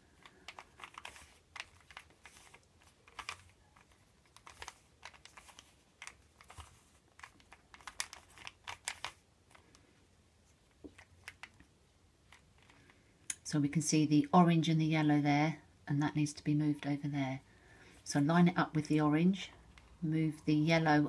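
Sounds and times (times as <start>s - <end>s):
puzzle cube plastic clicks: 0.0s - 9.9s, 10.8s - 13.4s.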